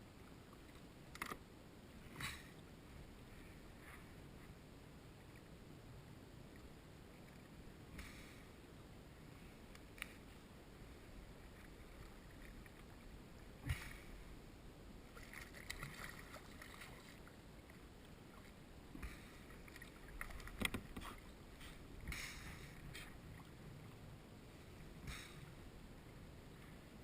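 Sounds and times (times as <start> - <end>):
water splashes: 15.0 - 25.6.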